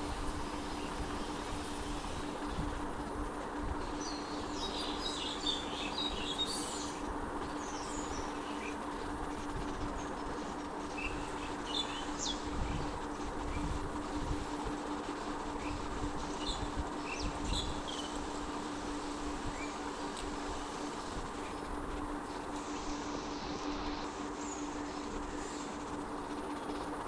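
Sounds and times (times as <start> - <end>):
small birds chirping: 3.8 - 8.9.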